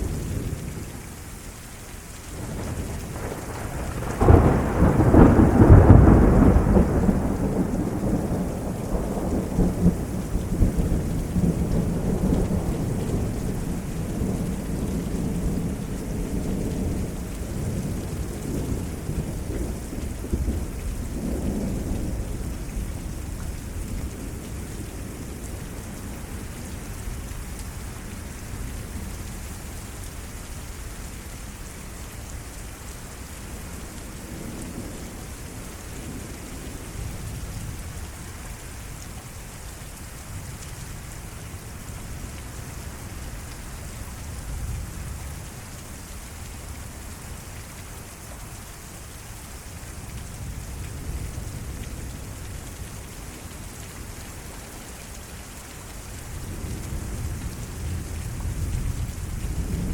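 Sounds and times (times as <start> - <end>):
steady rain: 0.0 - 59.9
deep rumbling thunder: 2.4 - 25.4, 56.3 - 59.9.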